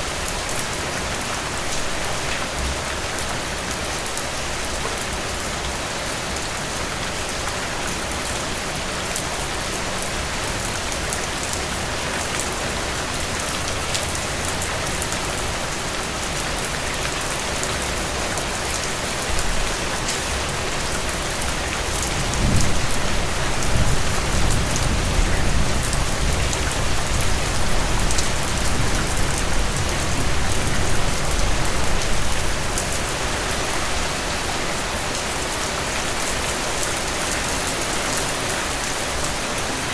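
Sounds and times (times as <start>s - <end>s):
steady rain on a surface: 0.0s - 39.9s
low thunder rumble: 22.0s - 32.3s.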